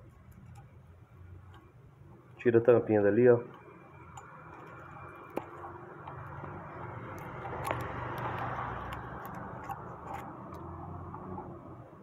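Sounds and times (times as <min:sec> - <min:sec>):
metal tool clicks and scrapes: 0:04.0 - 0:11.5.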